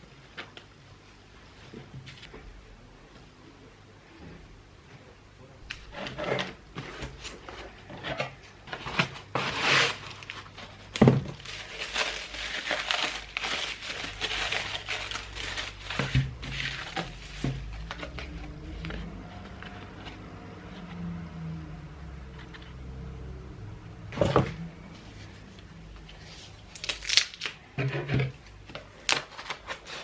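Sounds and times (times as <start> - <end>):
packaging crinkling: 8.8 - 20.1, 26.5 - 27.6.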